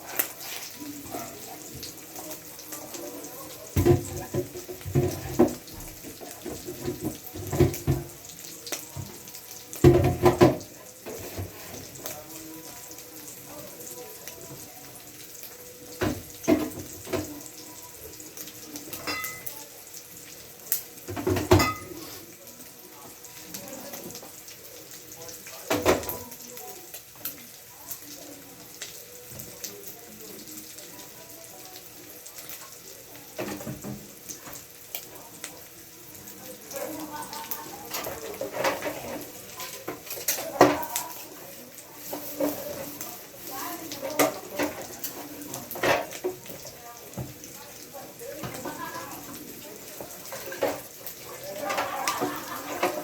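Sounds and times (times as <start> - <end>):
tap water running into a sink: 1.0 - 14.7, 15.8 - 19.7, 20.3 - 24.6, 25.2 - 26.4, 32.6 - 53.0
items knocking against sink: 3.8 - 5.7, 6.4 - 8.2, 9.8 - 11.5, 21.1 - 21.9.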